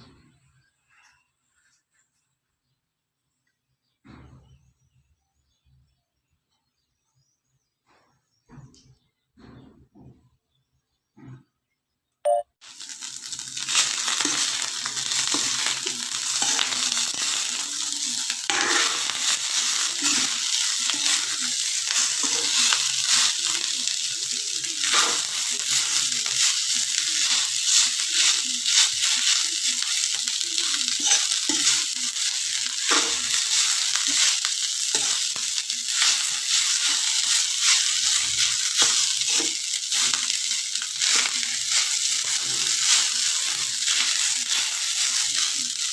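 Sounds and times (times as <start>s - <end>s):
rice sizzling in a pan: 12.6s - 45.9s
spatula scraping and knocking pan: 12.8s - 45.9s.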